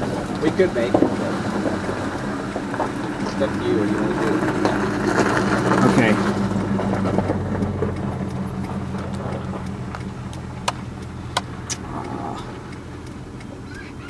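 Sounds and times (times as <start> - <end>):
car engine idling: 0.0 - 14.0
small sharp clicks: 6.9 - 14.0.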